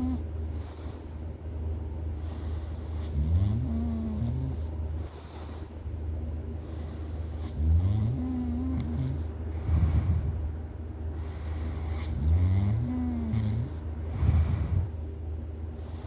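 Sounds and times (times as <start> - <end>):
steady low hum: 0.0 - 16.0
airy breathing: 9.4 - 10.5, 11.1 - 12.2, 14.0 - 15.0.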